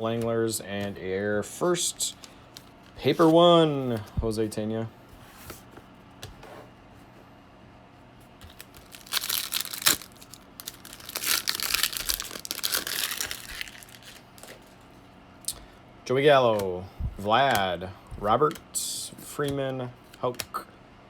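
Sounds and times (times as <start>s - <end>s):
wrapper sharp snap: 8.4s - 14.7s
card pack wrapper tearing and crinkling: 8.4s - 14.8s.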